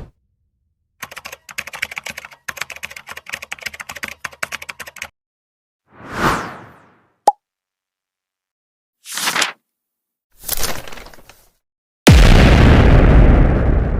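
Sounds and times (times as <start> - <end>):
typing on a computer keyboard: 1.0 - 5.1.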